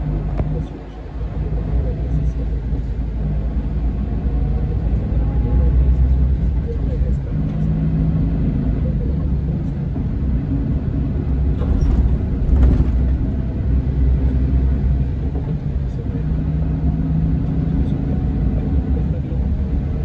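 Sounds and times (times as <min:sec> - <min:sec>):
bus engine running: 0:00.0 - 0:20.0.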